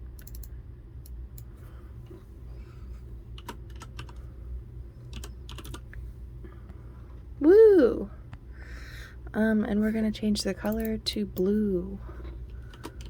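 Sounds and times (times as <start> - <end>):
keyboard typing: 0.2 - 1.5, 3.4 - 4.2, 5.1 - 5.8.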